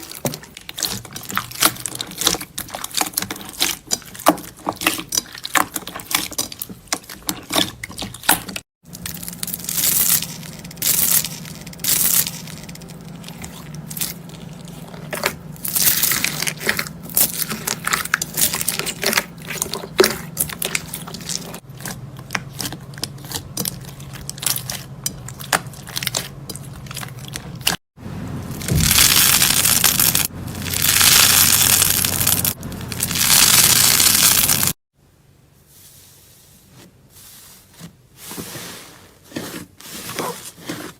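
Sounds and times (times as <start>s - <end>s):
hands squeezing crackling slime: 8.2s - 21.6s, 28.6s - 34.8s.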